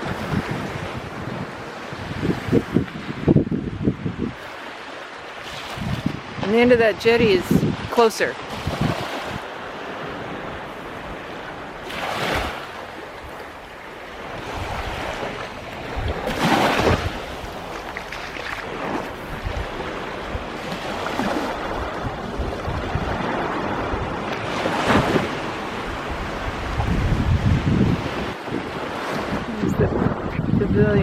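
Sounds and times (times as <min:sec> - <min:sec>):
wind buffeting microphone: 0:00.0 - 0:04.6, 0:05.4 - 0:31.0
surf breaking on beach: 0:07.6 - 0:31.0.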